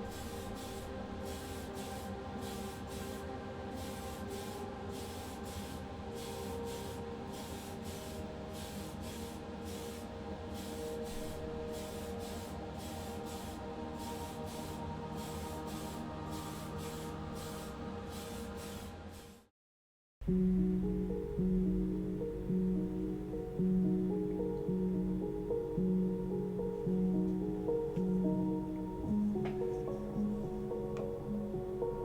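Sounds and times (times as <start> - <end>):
spray paint hissing: 0.0 - 19.4.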